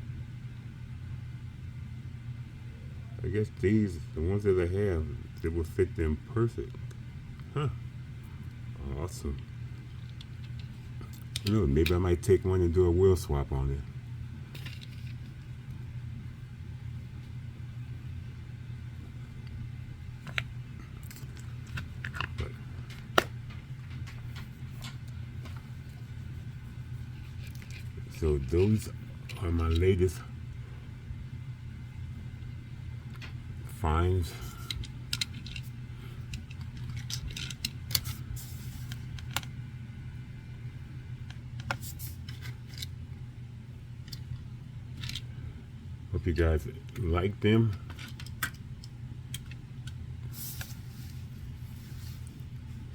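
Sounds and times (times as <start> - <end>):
steady low hum: 0.0 - 52.9
toy car and packaging rattling: 36.4 - 38.2.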